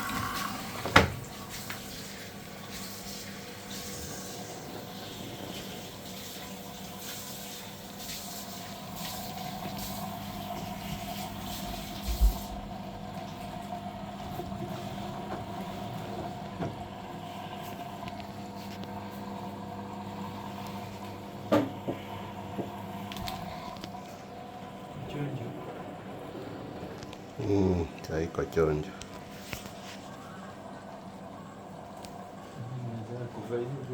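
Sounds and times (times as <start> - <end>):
water rushing in: 0.0 - 8.0
washing machine humming: 0.0 - 33.9.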